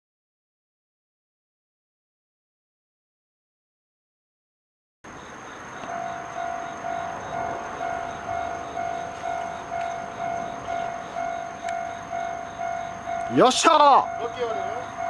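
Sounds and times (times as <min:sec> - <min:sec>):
level-crossing warning alarm: 0:05.1 - 0:15.0.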